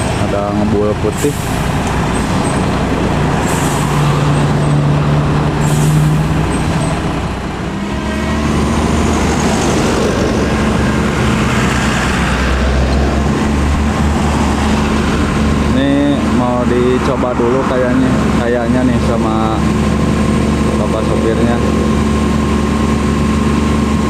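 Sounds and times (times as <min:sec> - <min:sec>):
truck diesel engine running: 0:00.0 - 0:24.0
air hiss: 0:03.4 - 0:04.1, 0:05.6 - 0:06.3.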